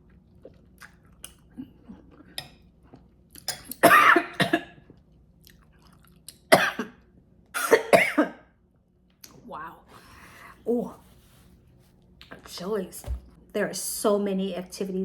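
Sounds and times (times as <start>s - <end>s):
chewing: 0.0s - 3.5s, 4.8s - 6.5s
woman coughing: 3.8s - 4.7s, 6.5s - 7.0s, 7.6s - 8.4s.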